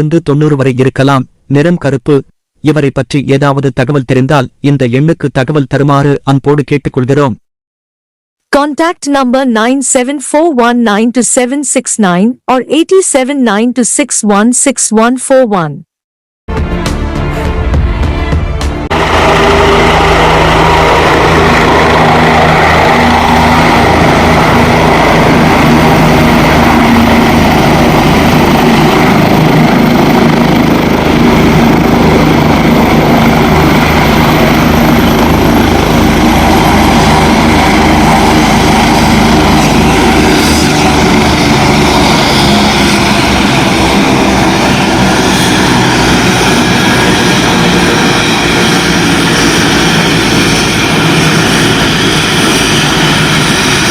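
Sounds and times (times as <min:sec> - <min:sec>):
helicopter flying: 0:18.0 - 0:53.9.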